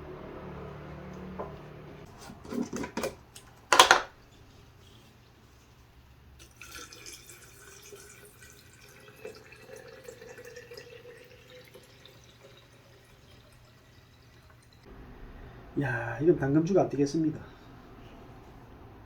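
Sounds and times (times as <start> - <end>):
liquid trickling and dripping: 4.2 - 14.9.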